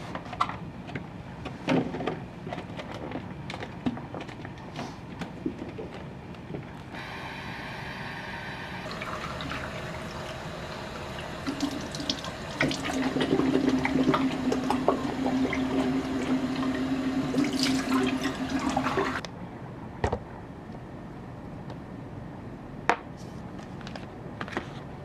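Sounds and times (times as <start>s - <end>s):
steady low hum: 5.4s - 19.9s
tap water running: 7.0s - 19.2s.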